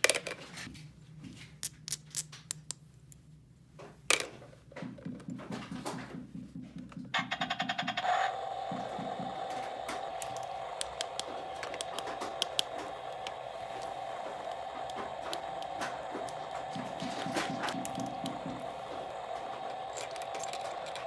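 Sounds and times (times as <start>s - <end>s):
electronic hum: 5.3s - 21.0s
plastic toy pieces clicking: 7.2s - 21.0s.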